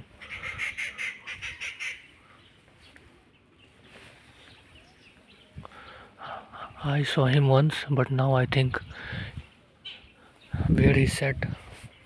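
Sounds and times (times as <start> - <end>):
bird calling: 0.0 - 6.8, 8.9 - 10.6.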